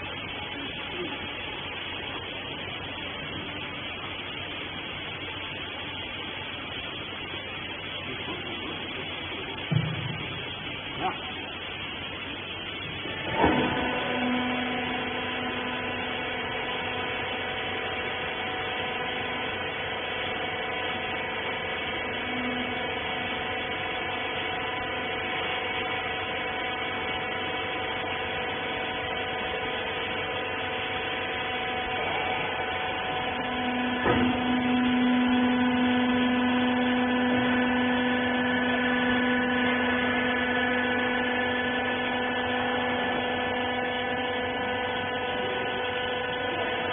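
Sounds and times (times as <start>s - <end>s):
hydraulic power unit humming: 0.0s - 46.9s.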